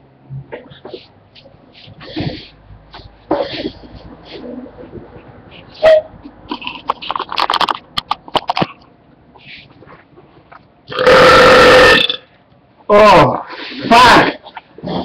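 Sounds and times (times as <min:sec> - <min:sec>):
mouth clicks and handling noises: 0:03.0 - 0:10.7
man belching: 0:10.9 - 0:12.2.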